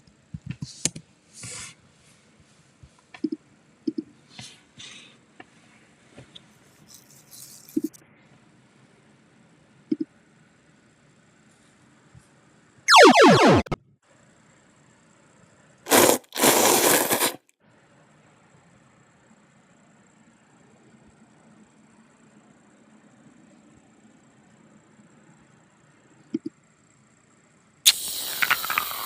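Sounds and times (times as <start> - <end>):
cartoon falling boing: 12.9 - 13.8.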